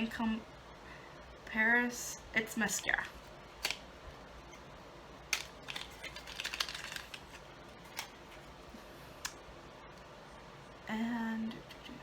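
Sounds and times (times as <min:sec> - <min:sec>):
packaging clicks and rustles: 0:05.3 - 0:08.6.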